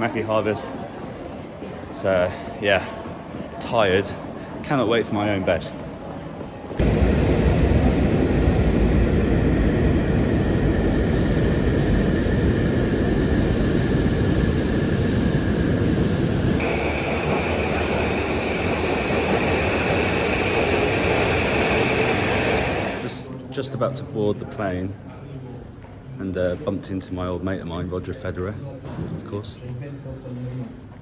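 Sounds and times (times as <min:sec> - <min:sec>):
high whine: 0:06.8 - 0:23.2
train rumbling: 0:06.8 - 0:23.2.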